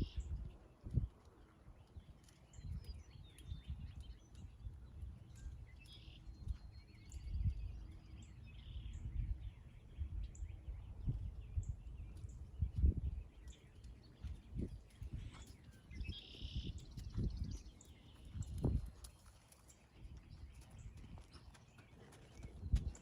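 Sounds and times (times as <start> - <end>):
small birds chirping: 0.0 - 23.0
horse hooves thudding: 12.1 - 23.0
bird trill: 15.6 - 18.4.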